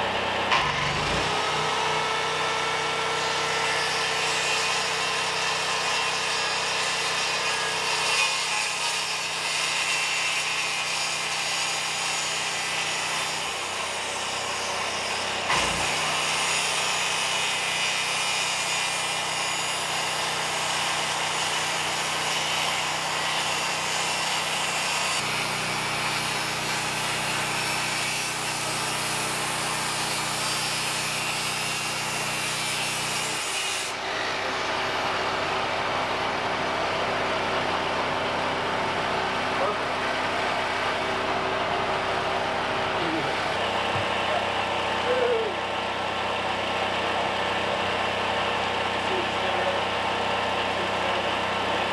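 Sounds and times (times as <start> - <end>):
power tool grinding wood: 0.0 - 51.9
knock: 43.9 - 44.2.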